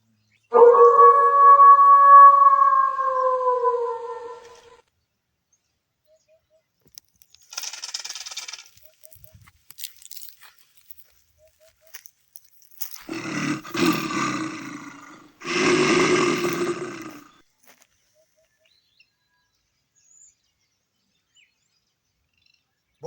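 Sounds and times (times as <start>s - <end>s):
animal-like roars: 0.6s - 4.8s, 13.1s - 17.4s
high rasping burst: 13.1s - 17.3s.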